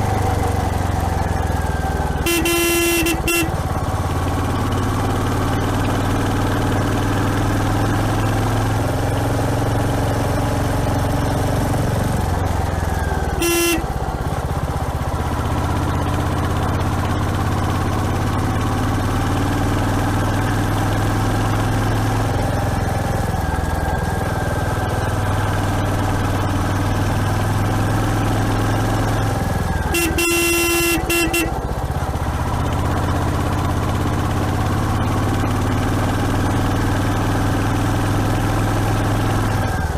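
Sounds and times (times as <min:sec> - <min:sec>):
motorcycle engine running: 0:00.0 - 0:39.9
horn: 0:02.2 - 0:03.5, 0:13.4 - 0:13.9, 0:29.9 - 0:31.5.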